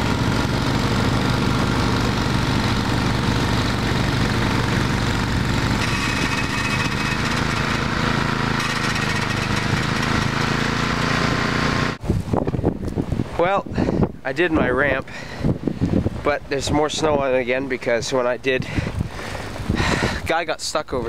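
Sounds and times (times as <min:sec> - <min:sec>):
small gasoline engine running: 0:00.0 - 0:12.0.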